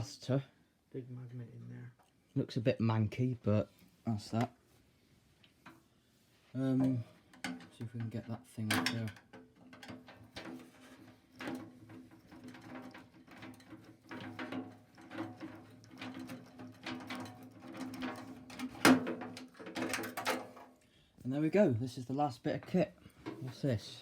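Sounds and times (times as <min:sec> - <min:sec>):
metal clicks scrapes and knocks: 0:06.8 - 0:20.8.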